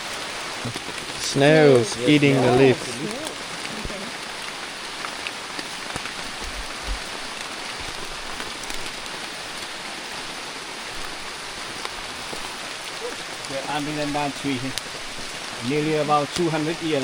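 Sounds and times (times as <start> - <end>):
steady rain falling: 0.0 - 17.0.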